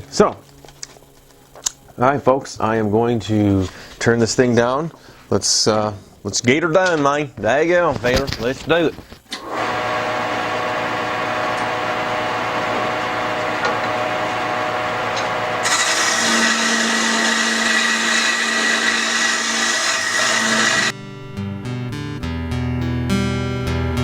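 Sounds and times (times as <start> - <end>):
turning tool cutting hiss: 9.3 - 20.9
wood lathe whine: 9.3 - 20.9
acoustic guitar music: 20.9 - 24.0.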